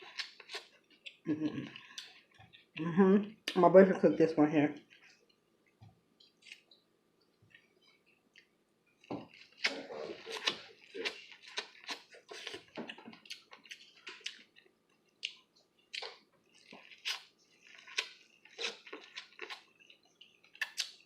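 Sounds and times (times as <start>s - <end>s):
chewing corn on the cob: 0.0s - 2.8s, 7.5s - 21.0s.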